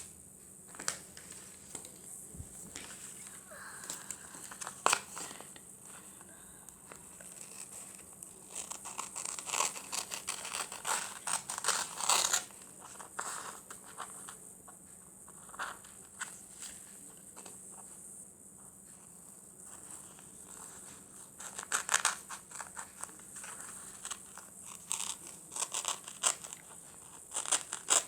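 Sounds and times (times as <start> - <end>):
faint high-pitched hum: 0.0 - 28.0
paper rustling and crinkling: 0.7 - 6.2, 6.8 - 14.4, 19.6 - 28.0.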